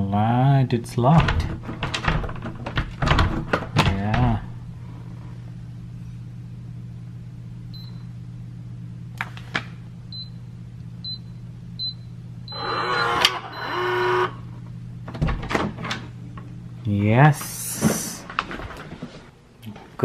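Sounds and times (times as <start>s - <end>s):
lock motor buzzing whir: 12.5s - 14.4s.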